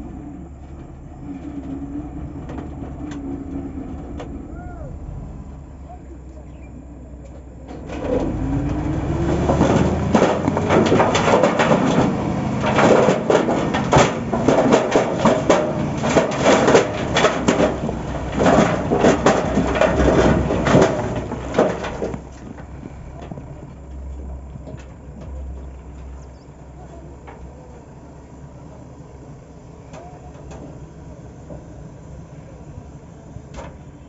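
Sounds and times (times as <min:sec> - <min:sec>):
earthmoving machine diesel engine: 0:00.0 - 0:34.0
machine clanks and knocks: 0:07.2 - 0:26.2.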